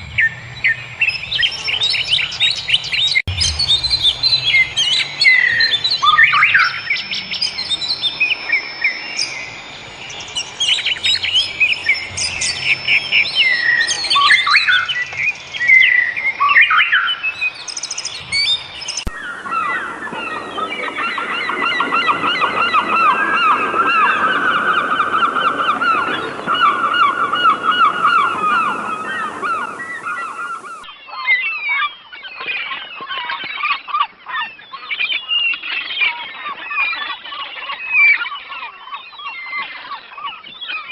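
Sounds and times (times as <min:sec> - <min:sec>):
birds chirping and singing: 0:00.0 - 0:40.9
flock giving rapid calls: 0:00.2 - 0:34.0.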